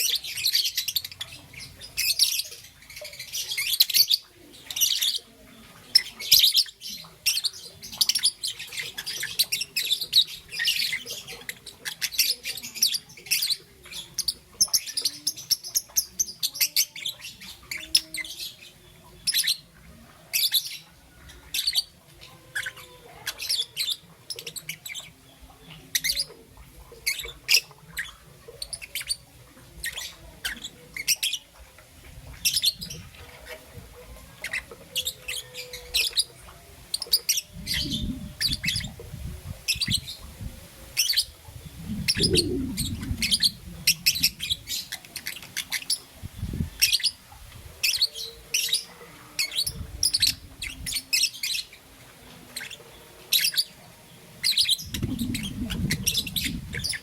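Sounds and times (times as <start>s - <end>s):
bird chirping: 34.4s - 51.7s
low rumbling: 41.4s - 44.9s, 54.8s - 57.0s.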